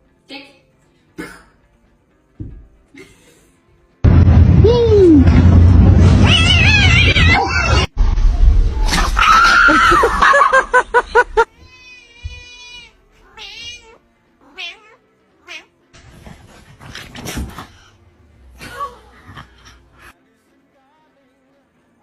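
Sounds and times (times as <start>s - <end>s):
cat meowing: 6.2s - 7.9s, 11.6s - 15.8s.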